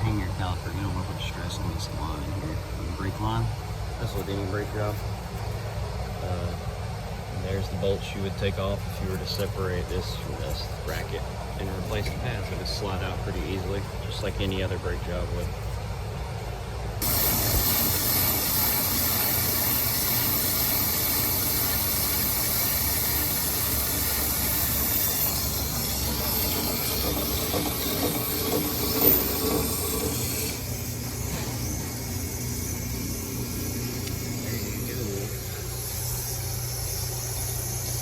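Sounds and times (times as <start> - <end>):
motor hum: 0.0 - 38.0
cutting bit hissing: 17.0 - 38.0.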